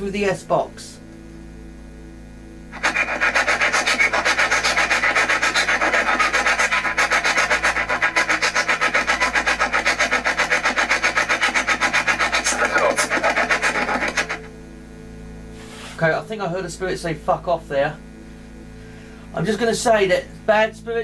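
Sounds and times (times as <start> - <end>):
radio static chopping: 2.7 - 14.5.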